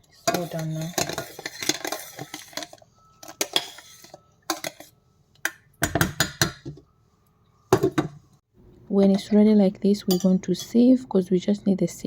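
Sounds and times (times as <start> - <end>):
kitchen utensils clattering: 0.1 - 4.9.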